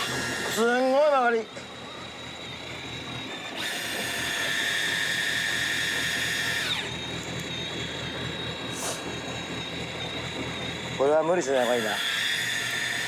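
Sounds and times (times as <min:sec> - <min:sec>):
fishing reel whining: 0:00.0 - 0:13.0.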